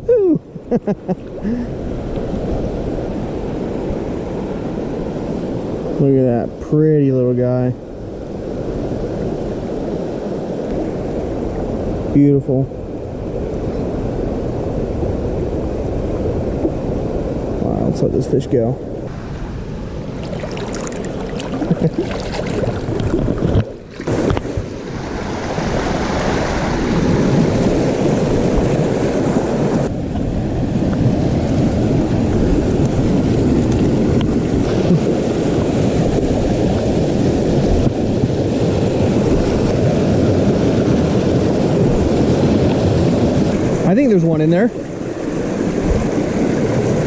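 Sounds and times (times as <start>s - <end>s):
creek water rushing: 9.2s - 12.6s, 18.9s - 47.0s.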